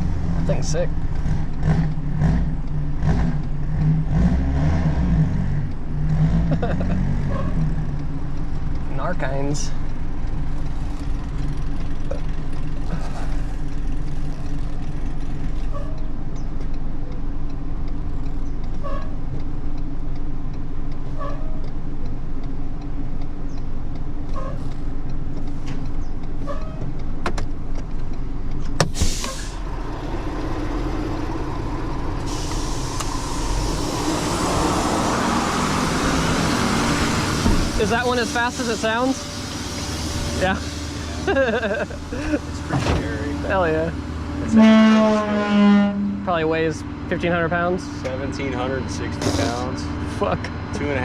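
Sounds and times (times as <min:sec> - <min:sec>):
car engine idling: 0:00.0 - 0:04.1, 0:05.6 - 0:51.0
broad rushing noise: 0:31.6 - 0:41.3.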